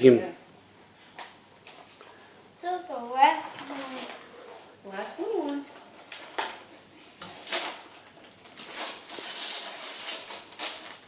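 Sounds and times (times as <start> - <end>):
wrapping paper rustling and tearing: 3.4 - 4.6, 7.2 - 11.0.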